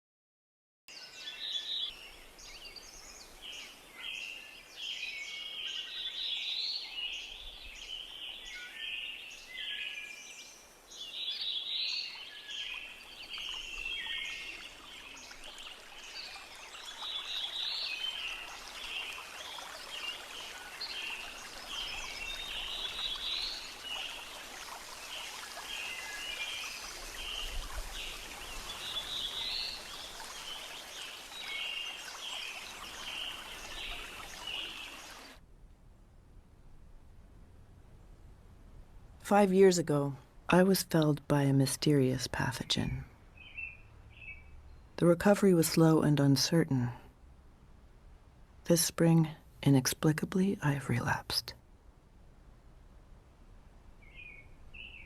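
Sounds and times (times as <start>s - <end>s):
songbirds chirping and trilling: 0.9s - 35.4s, 39.3s - 46.9s, 53.9s - 55.0s.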